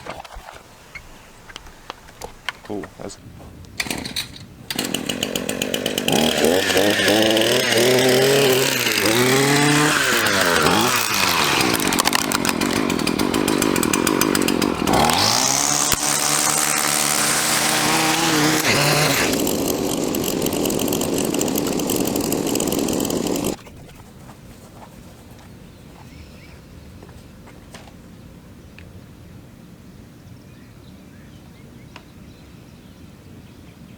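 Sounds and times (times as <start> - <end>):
two-stroke lawn engine revving: 3.8 - 23.6.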